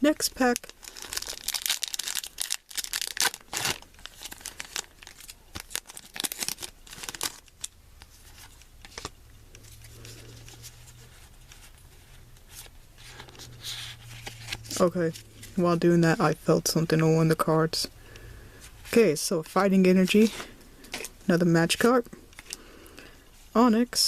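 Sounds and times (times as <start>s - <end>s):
foil wrapper tearing and crinkling: 0.4s - 7.7s.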